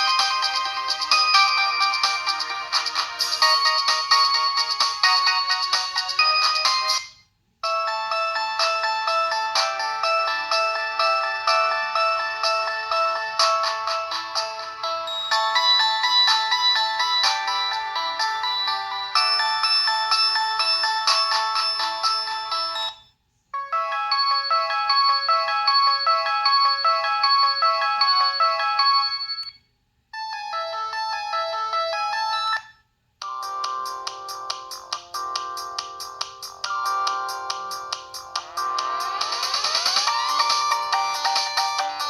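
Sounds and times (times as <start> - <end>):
bell-like phone ringtone melody: 0.0 - 29.6, 30.2 - 42.0.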